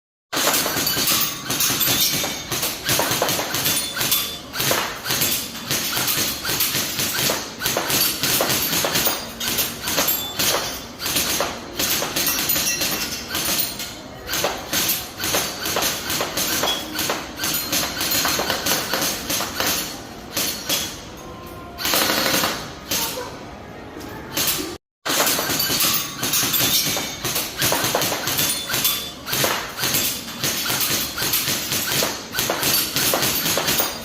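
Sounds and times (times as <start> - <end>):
bbs pinging off metal targets: 0.4 - 21.2, 25.1 - 34.0
airsoft guns firing: 21.8 - 23.2.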